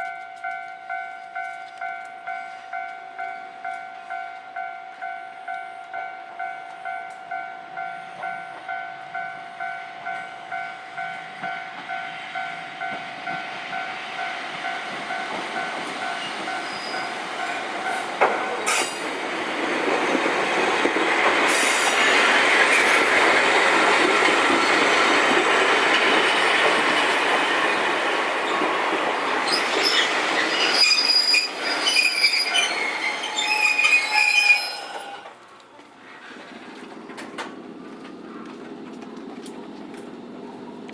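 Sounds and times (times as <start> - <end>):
level crossing warning bell: 0.0 - 18.6
wheels clicking over rail joints: 14.6 - 40.9
high-pitched wheel squeal: 29.5 - 35.2.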